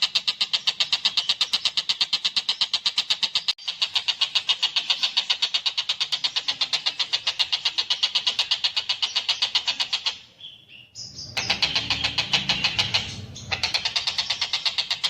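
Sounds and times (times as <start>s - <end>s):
bird call rattling notes: 0.0s - 10.2s, 11.3s - 15.0s.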